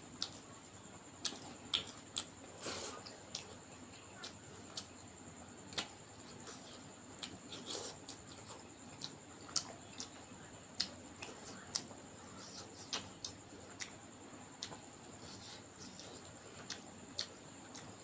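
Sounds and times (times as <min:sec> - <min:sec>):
wet chewing and lip smacks: 0:01.2 - 0:02.4, 0:04.2 - 0:05.0, 0:05.7 - 0:18.0.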